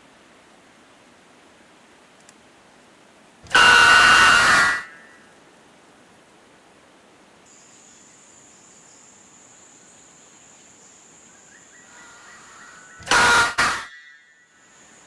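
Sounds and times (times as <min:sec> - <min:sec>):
extremely loud bird call: 0:03.5 - 0:05.2, 0:11.8 - 0:14.3
high thin insect whine: 0:07.5 - 0:15.0.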